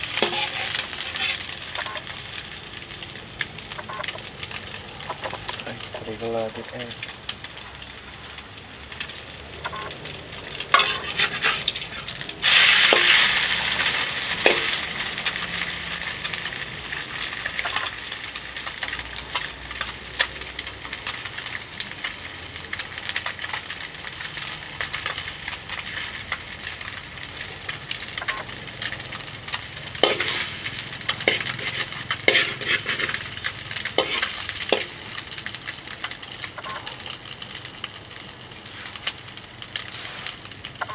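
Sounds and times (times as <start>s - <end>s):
utensil scraping a pan: 0.0s - 2.1s, 10.7s - 15.0s, 30.0s - 35.2s
egg sizzling in hot oil: 0.0s - 40.9s.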